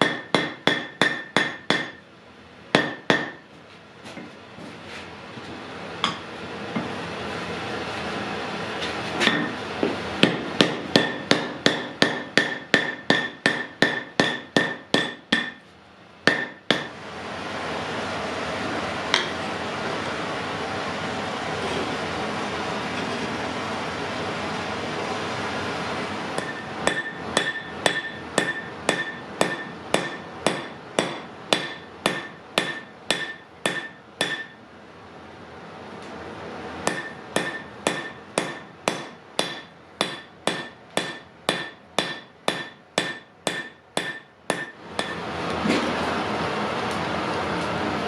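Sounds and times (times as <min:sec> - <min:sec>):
hammer striking iron on anvil: 0:00.0 - 0:02.0, 0:02.7 - 0:03.4, 0:06.0 - 0:07.0, 0:09.2 - 0:15.6, 0:16.2 - 0:16.9, 0:19.1 - 0:19.4, 0:26.4 - 0:34.6, 0:36.8 - 0:45.3.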